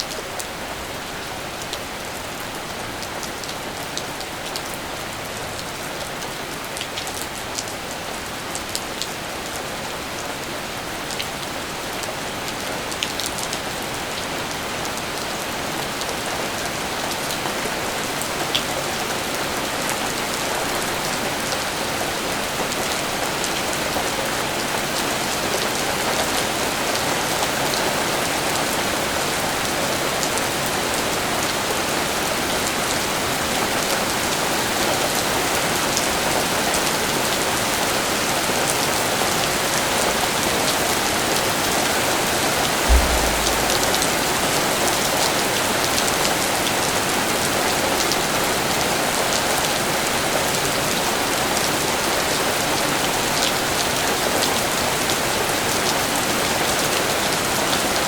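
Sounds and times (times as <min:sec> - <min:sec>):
raindrop ticks: 0:42.9 - 0:44.4
low thump: 0:42.9 - 0:44.7.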